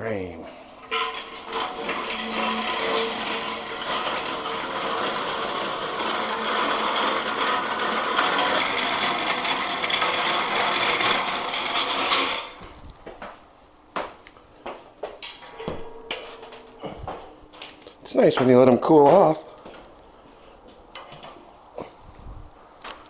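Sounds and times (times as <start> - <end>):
machine whirring: 0.7 - 12.8.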